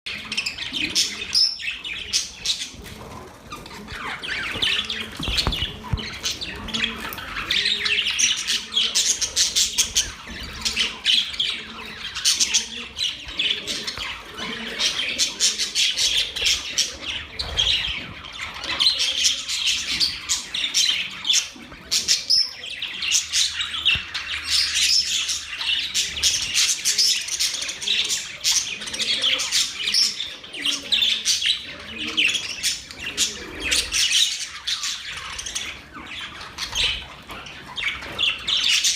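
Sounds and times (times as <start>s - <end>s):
budgerigars warbling and chattering: 0.1s - 38.9s.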